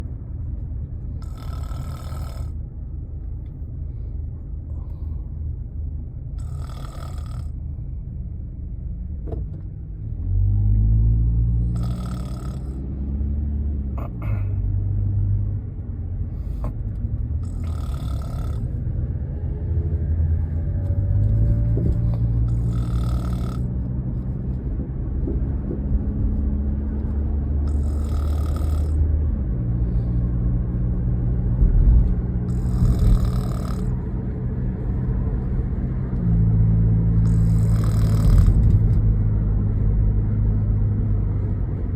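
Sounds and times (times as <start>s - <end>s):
car engine rumble: 0.0s - 41.9s
woman snoring: 1.2s - 2.5s, 6.4s - 7.5s, 11.7s - 12.8s, 17.4s - 18.6s, 22.5s - 23.7s, 27.7s - 29.0s, 32.5s - 34.0s, 37.3s - 38.6s.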